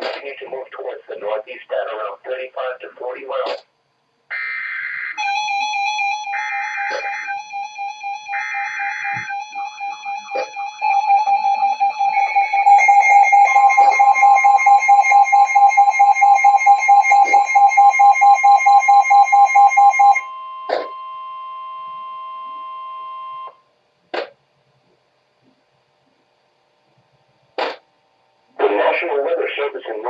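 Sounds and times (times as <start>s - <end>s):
pulsing electronic alert tone: 5.2s - 21.0s
steady higher tone: 5.2s - 23.6s.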